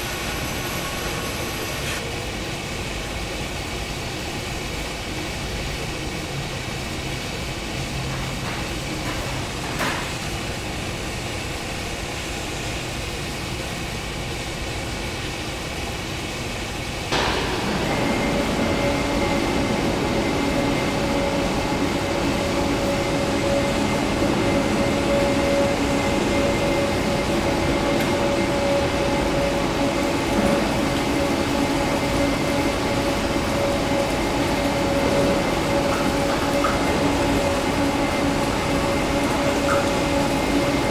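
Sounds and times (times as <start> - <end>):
machine high whine: 0.0 - 2.2, 14.6 - 40.9
factory machinery running: 0.0 - 40.9.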